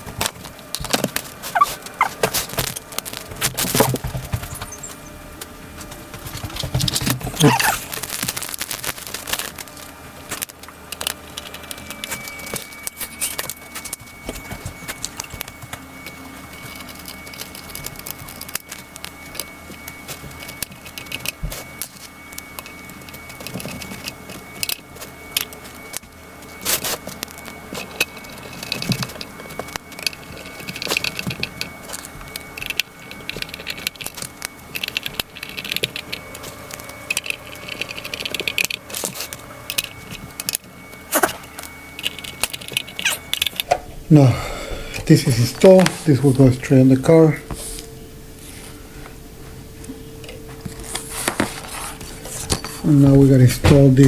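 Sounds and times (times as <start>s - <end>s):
plastic pieces clicking and rattling: 6.5s - 15.5s, 16.1s - 43.7s.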